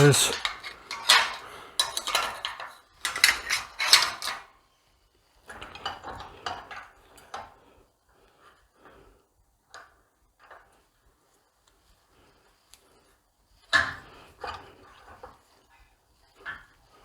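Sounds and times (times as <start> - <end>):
metal tools clanking: 0.0 - 4.4.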